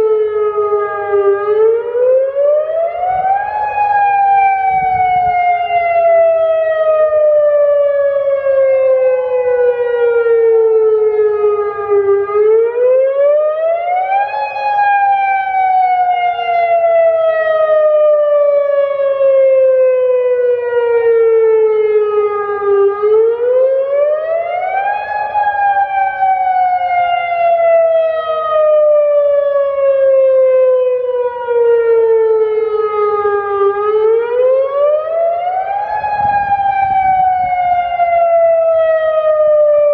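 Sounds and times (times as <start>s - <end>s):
wailing warning siren: 0.0s - 39.9s.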